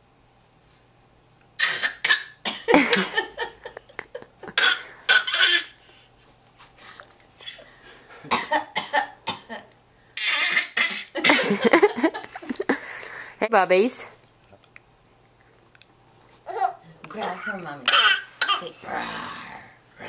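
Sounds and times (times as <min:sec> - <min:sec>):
baby fake coughing: 0:01.6 - 0:03.2, 0:04.5 - 0:05.8, 0:08.3 - 0:09.6, 0:10.2 - 0:11.5, 0:16.5 - 0:18.8.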